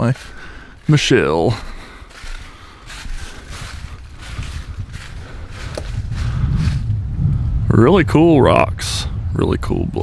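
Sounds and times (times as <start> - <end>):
footsteps on a trail: 0.0 - 7.1
low rumble: 3.6 - 10.0.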